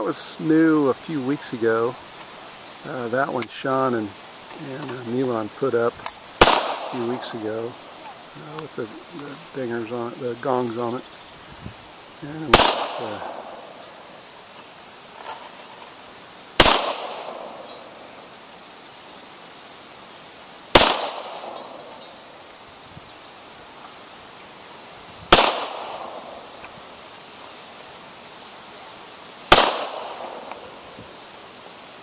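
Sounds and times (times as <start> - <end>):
gunshots with echo: 6.4 - 7.5, 12.4 - 13.7, 16.6 - 17.8, 20.8 - 21.8, 25.3 - 26.4, 29.5 - 30.8.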